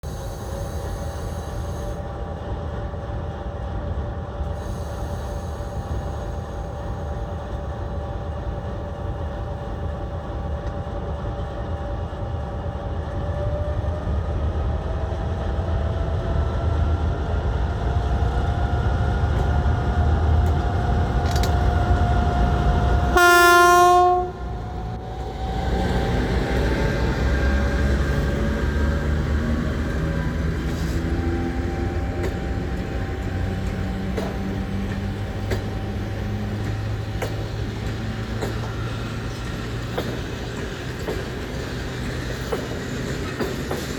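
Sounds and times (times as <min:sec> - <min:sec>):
train horn blast: 0:23.1 - 0:24.7
locomotive pulling away: 0:24.2 - 0:43.9.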